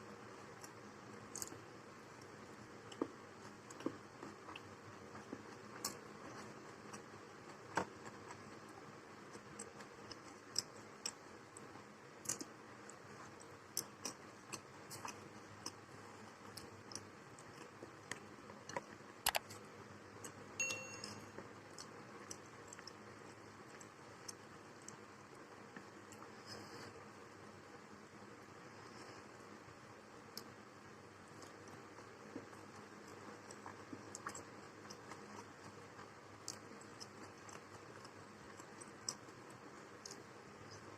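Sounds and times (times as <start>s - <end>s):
quiet chewing: 0.2s - 20.4s, 21.3s - 27.6s, 31.2s - 40.9s
short ringing clink: 20.6s - 21.3s.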